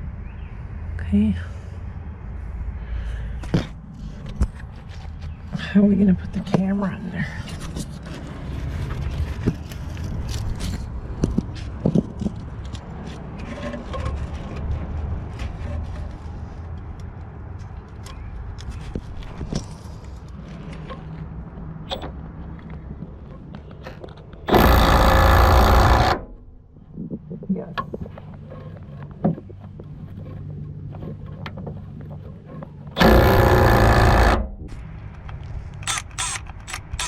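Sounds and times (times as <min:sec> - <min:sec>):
impact wrench hammering: 0:24.5 - 0:26.3, 0:33.0 - 0:34.7
tool and socket clicking and scraping: 0:30.1 - 0:37.0.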